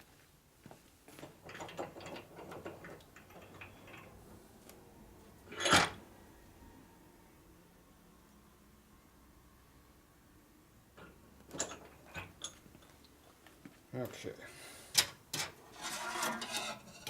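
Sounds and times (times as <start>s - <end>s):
clicks and scrapes of hand tools: 14.9s - 17.0s.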